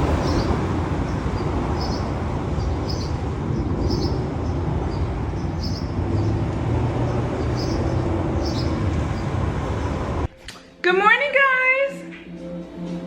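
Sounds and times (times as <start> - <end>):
distant traffic rumble: 0.0 - 10.3
high bird chirps: 0.2 - 6.4, 7.1 - 9.9.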